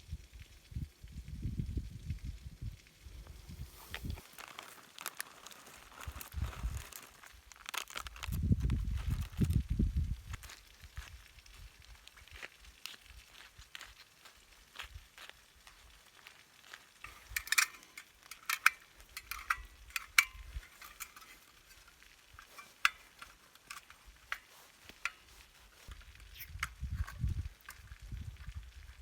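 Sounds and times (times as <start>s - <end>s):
sharp clicks and ticks: 17.0s - 28.4s.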